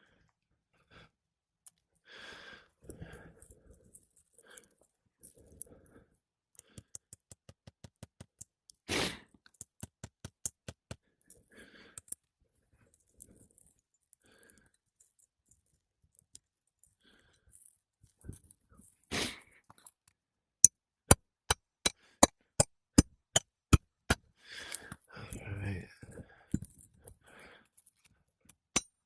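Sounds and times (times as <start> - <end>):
sharp clicks of shingles: 6.6 - 8.8, 9.4 - 12.3.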